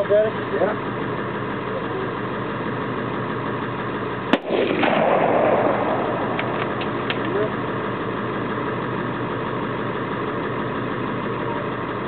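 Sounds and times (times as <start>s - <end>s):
vehicle engine idling: 0.0s - 12.0s
explosion blast and rumble: 4.3s - 8.4s.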